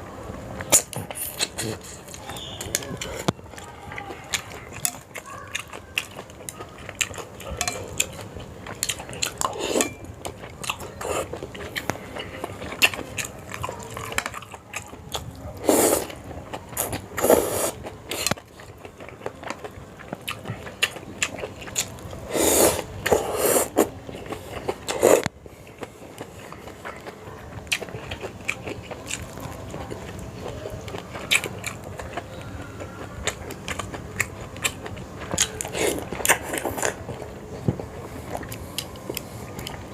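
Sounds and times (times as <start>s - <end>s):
wet chewing: 0.6s - 39.9s
slurping noodles: 15.6s - 16.2s, 16.8s - 18.3s, 22.3s - 23.9s, 24.8s - 25.3s.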